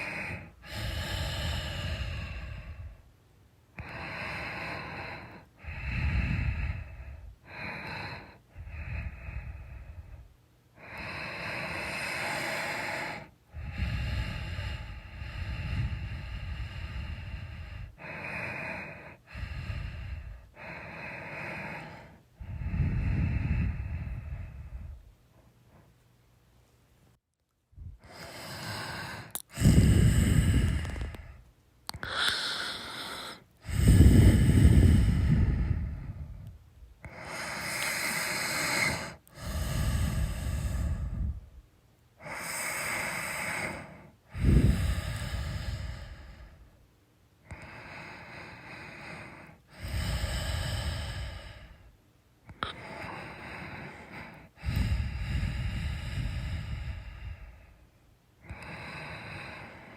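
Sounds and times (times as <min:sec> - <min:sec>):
person snoring: 0:00.0 - 0:03.0, 0:28.0 - 0:36.4, 0:37.0 - 0:41.4, 0:42.2 - 0:46.6, 0:47.5 - 0:51.8, 0:52.5 - 0:57.6.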